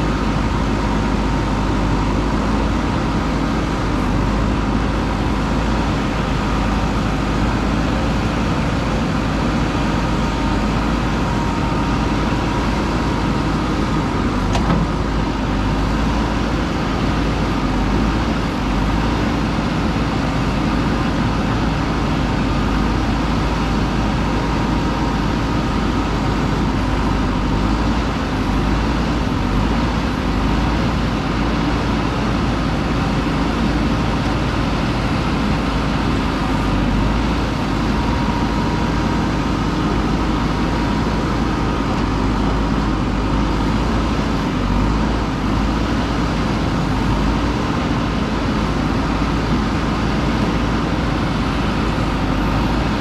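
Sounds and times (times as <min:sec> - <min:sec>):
diesel engine running under load: 0:00.0 - 0:53.0
brief knock: 0:14.5 - 0:14.9.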